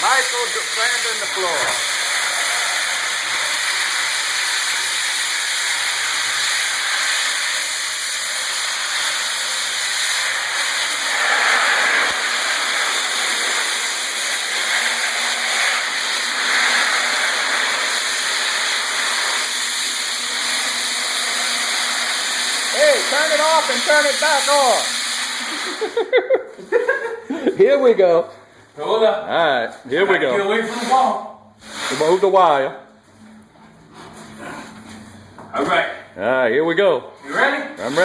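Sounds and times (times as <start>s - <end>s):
floor sander grinding: 0.0s - 26.0s, 37.2s - 38.0s.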